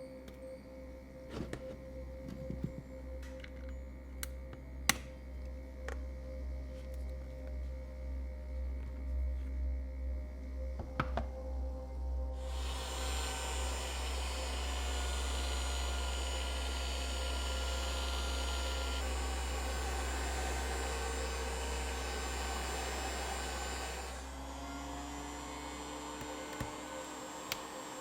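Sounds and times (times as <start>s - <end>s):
low hum: 0.0s - 28.0s
heat gun blowing hot air: 12.4s - 28.0s.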